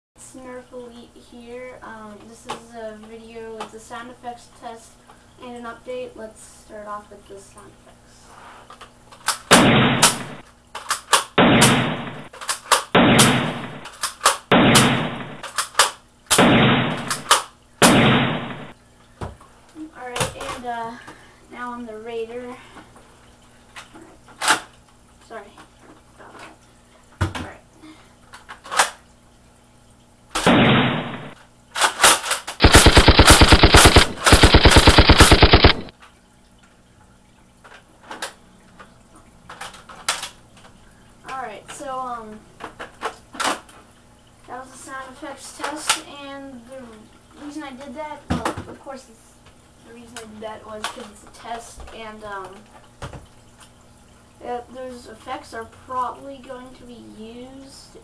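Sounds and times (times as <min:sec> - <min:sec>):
gunshots: 0:09.5 - 0:10.4, 0:11.4 - 0:12.3, 0:13.0 - 0:13.9, 0:14.5 - 0:15.4, 0:16.3 - 0:18.8, 0:30.4 - 0:31.4, 0:32.6 - 0:35.9
machine gun automatic fire: 0:09.5 - 0:10.4, 0:11.4 - 0:12.3, 0:13.0 - 0:13.9, 0:14.5 - 0:15.5, 0:16.3 - 0:18.8, 0:30.4 - 0:31.4, 0:32.6 - 0:35.9
sharp clicks: 0:09.9 - 0:18.8, 0:32.6 - 0:35.9
dull dense noise: 0:32.6 - 0:35.9.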